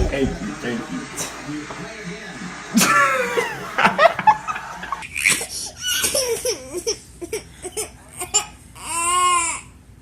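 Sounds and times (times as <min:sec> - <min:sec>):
baby giggling: 0:04.9 - 0:09.6.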